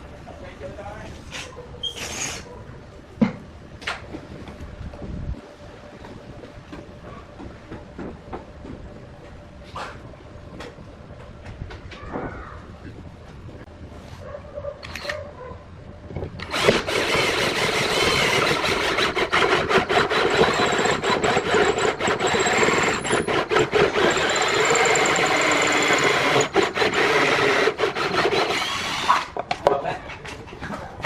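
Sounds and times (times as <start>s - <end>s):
tool grinding wood: 16.4s - 29.4s.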